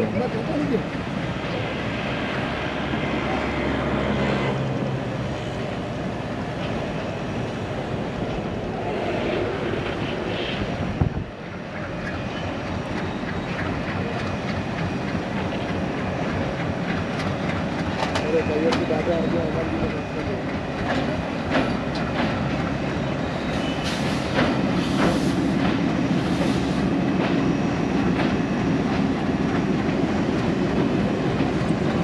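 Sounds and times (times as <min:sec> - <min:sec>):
train rumbling over bridge: 0:00.0 - 0:32.0
wind on microphone: 0:09.2 - 0:11.4.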